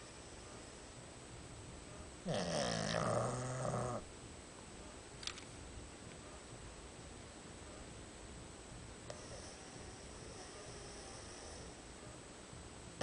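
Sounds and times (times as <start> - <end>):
pet snoring: 2.2 - 4.1, 9.1 - 11.8.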